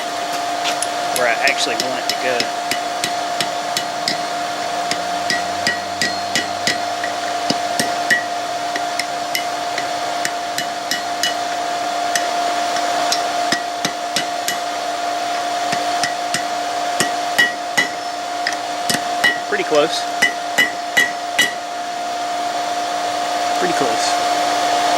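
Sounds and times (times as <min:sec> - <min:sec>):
steady hum: 0:00.0 - 0:24.9
hammer striking steel on anvil: 0:01.2 - 0:14.8, 0:15.6 - 0:21.8.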